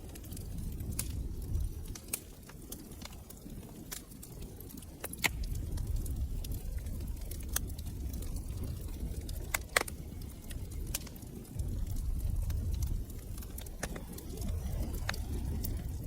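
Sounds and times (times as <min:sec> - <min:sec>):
fire popping: 0:00.0 - 0:16.0
fire rumbling: 0:00.0 - 0:16.0.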